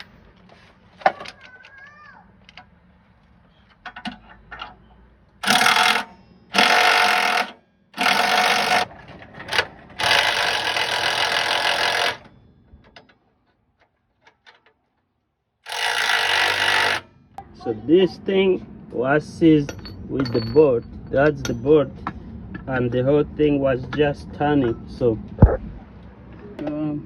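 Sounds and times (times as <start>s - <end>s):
power tool bursts: 5.4s - 8.9s, 9.5s - 12.3s, 15.6s - 17.1s.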